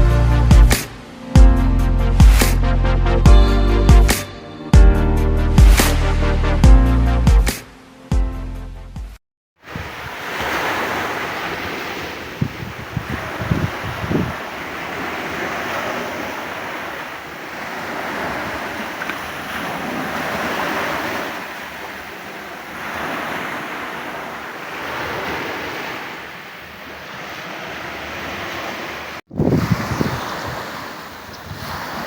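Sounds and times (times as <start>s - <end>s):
sea waves surging: 9.6s - 32.0s
wind on microphone: 9.7s - 16.6s, 29.3s - 32.0s.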